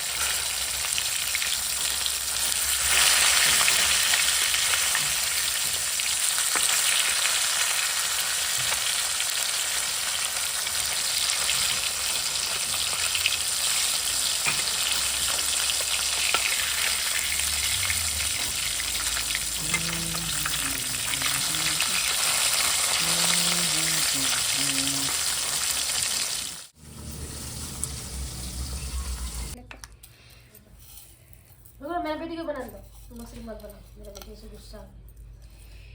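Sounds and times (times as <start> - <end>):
food frying in hot oil: 0.0 - 29.6
stirring scrapes in a pan: 30.7 - 31.5.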